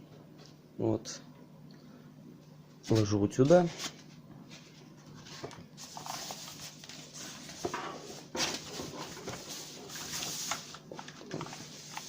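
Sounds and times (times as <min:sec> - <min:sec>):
packaging rustling: 0:05.3 - 0:12.0.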